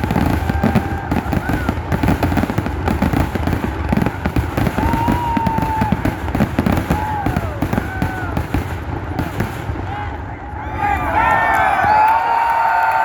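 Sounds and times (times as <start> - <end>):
fireworks whistling: 0.0 - 9.9
fireworks bangs and crackles: 0.0 - 12.2.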